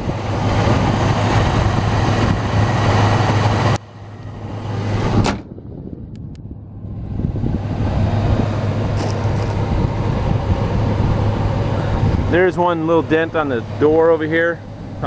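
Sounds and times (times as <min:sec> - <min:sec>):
truck engine idling: 0:00.0 - 0:05.2, 0:06.5 - 0:15.0
loud thump: 0:05.2 - 0:05.5.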